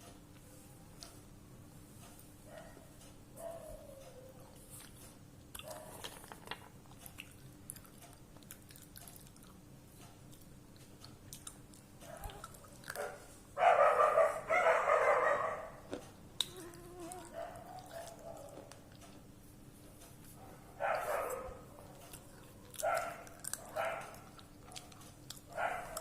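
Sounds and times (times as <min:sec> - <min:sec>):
chewing crunchy food: 0:04.4 - 0:13.5, 0:15.8 - 0:26.0.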